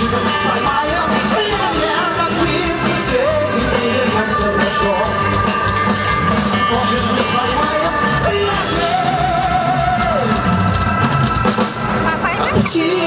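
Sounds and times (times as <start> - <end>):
person singing: 0.0 - 5.2, 6.4 - 10.5, 12.4 - 13.0
rock band playing: 0.0 - 13.0.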